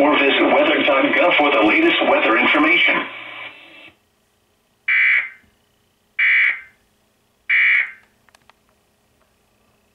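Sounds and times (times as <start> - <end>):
shrill buzzing data bursts: 4.9 - 6.8, 7.5 - 8.0.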